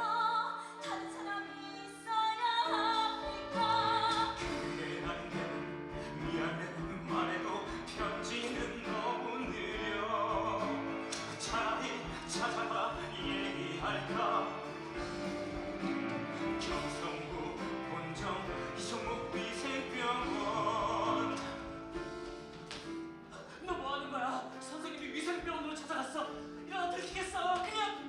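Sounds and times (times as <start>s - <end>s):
person singing: 0.0s - 22.2s
instrumental accompaniment: 0.8s - 23.4s.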